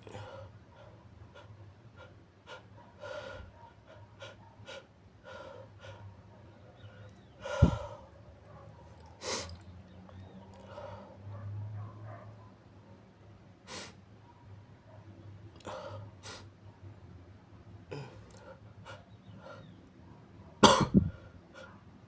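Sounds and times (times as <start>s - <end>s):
gasping breaths: 6.8s - 8.2s
muffled sneeze: 20.6s - 21.3s.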